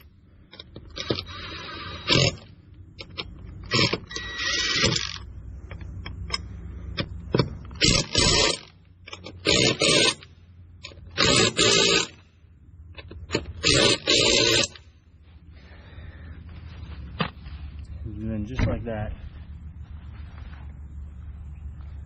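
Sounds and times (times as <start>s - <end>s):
impact wrench rattling: 7.0s - 12.2s, 12.9s - 14.8s.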